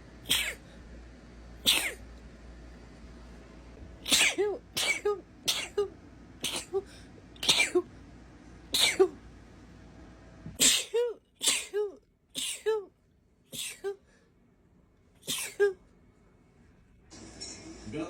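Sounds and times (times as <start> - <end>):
woman sneezing: 0.3 - 0.6, 1.6 - 2.0, 4.0 - 7.8, 8.8 - 9.2, 10.6 - 12.9, 13.5 - 14.0, 15.2 - 15.8.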